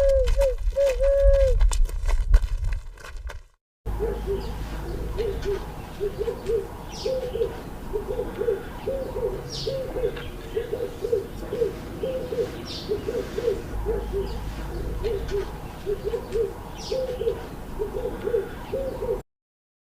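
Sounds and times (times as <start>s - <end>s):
owl hooting: 4.0s - 19.2s.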